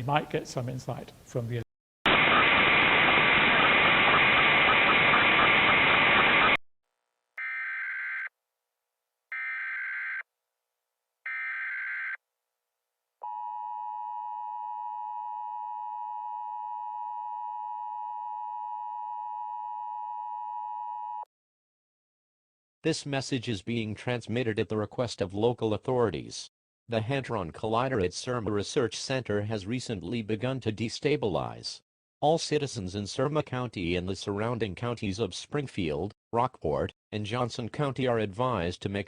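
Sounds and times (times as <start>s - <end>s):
buzzy digital data bursts: 2.1s - 6.6s
loud static: 2.1s - 6.6s.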